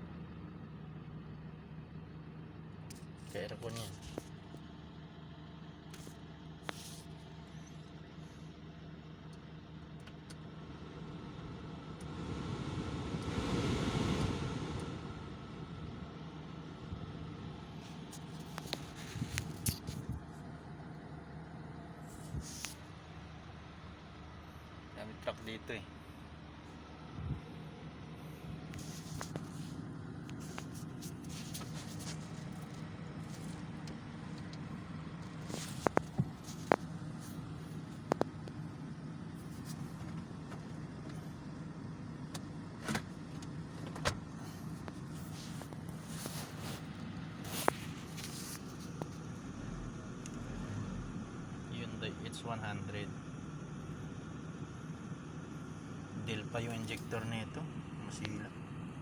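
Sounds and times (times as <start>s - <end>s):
diesel engine idling: 0.0s - 59.0s
passing vehicle rush: 11.0s - 15.9s.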